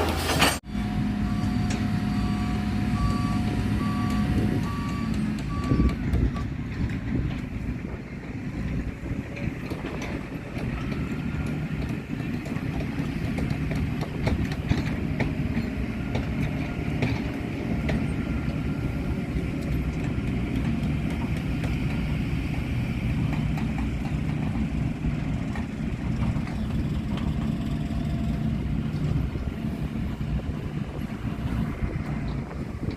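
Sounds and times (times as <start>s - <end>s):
diesel engine running: 0.0s - 32.9s
clanks and rattles: 4.9s - 18.6s, 19.2s - 29.6s.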